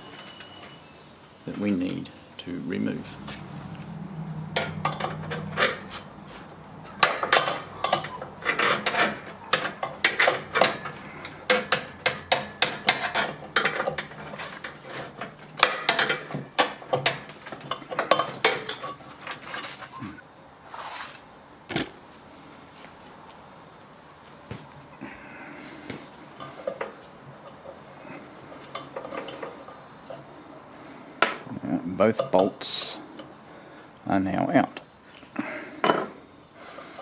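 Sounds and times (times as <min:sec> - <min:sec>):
spanner clinking on metal bolts: 0:04.5 - 0:05.9, 0:06.9 - 0:19.7, 0:28.6 - 0:30.2, 0:32.0 - 0:33.3.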